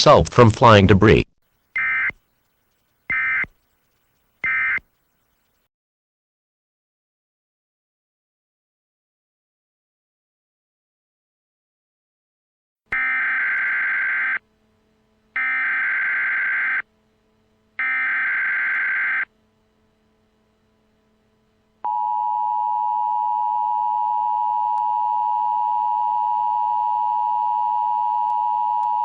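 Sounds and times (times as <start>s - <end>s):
screeching data bursts: 1.6s - 5.6s, 13.0s - 14.4s, 15.4s - 16.9s, 17.8s - 19.3s.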